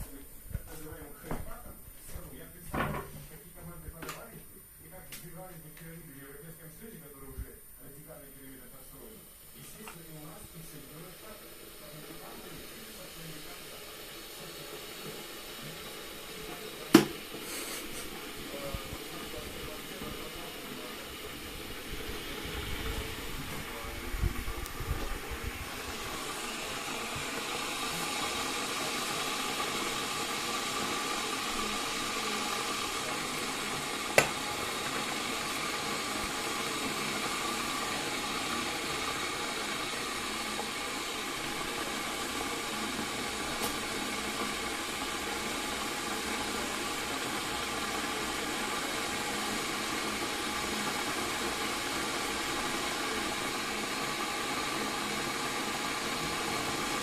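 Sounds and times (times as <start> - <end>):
kettle heating water: 0.0 - 57.0
kettle switch click: 16.9 - 17.2, 34.1 - 34.4.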